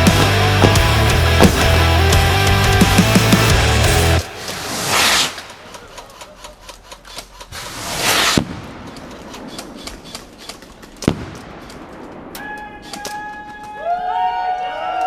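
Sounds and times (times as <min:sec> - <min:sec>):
rising hiss: 0:03.0 - 0:05.8.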